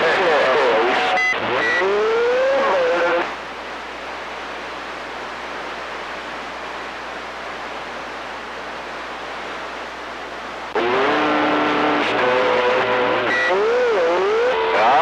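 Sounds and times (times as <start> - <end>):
whistling radio tones: 0.0 - 3.3, 10.8 - 15.0
radio static hiss: 0.0 - 15.0.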